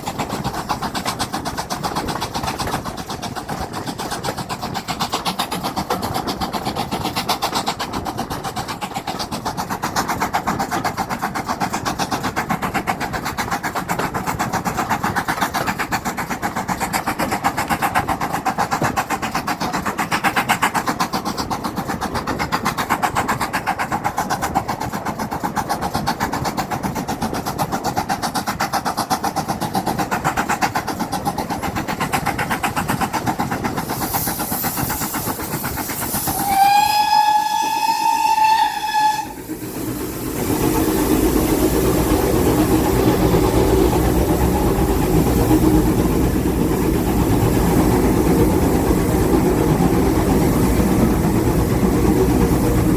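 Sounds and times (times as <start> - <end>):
train running: 0.0 - 52.9
locomotive whistle: 36.2 - 39.5.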